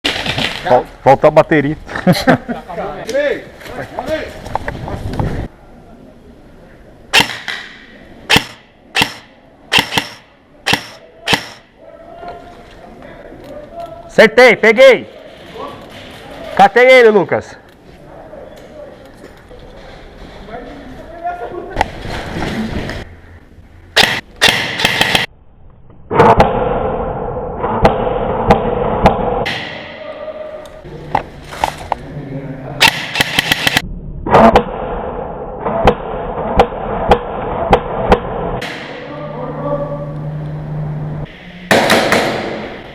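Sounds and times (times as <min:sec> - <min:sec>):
airsoft rifle cracks: 0:07.1 - 0:11.6
airsoft rifle shots: 0:07.1 - 0:11.7, 0:24.0 - 0:25.3, 0:32.8 - 0:39.1, 0:41.7 - 0:42.9.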